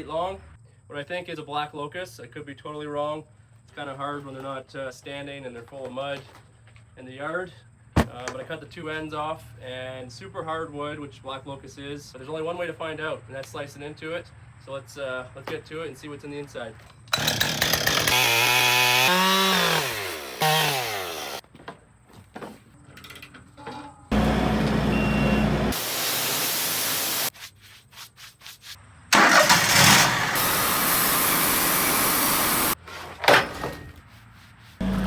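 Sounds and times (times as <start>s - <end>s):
chainsaw cutting into log: 17.1s - 21.4s, 24.1s - 27.3s, 29.2s - 32.8s
chainsaw revving: 17.1s - 21.4s, 24.1s - 27.3s, 29.2s - 32.8s.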